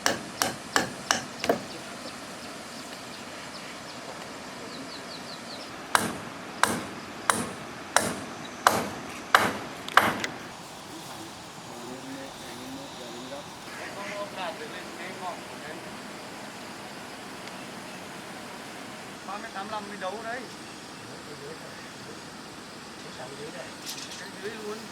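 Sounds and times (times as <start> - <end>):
hammer driving a nail: 0.0 - 1.8, 5.9 - 10.4.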